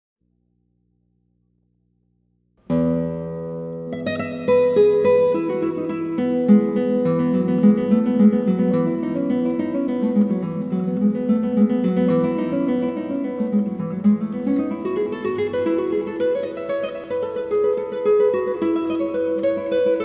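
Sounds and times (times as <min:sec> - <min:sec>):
acoustic guitar music: 0:02.6 - 0:20.0.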